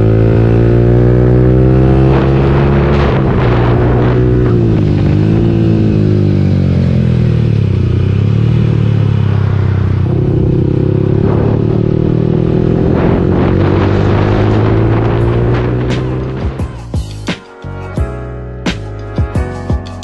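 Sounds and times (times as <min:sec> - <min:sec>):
motorcycle engine revving: 0:00.0 - 0:16.9
exhaust crackles: 0:02.1 - 0:16.8.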